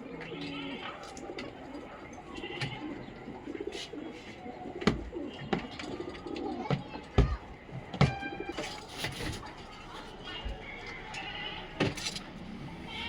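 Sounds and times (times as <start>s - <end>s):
hens clucking softly: 0.0s - 7.2s.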